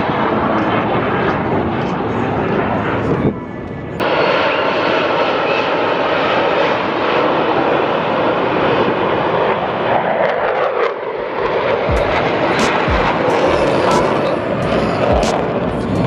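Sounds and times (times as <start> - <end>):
airplane flying over: 0.0 - 16.0
low thumps: 11.9 - 14.0.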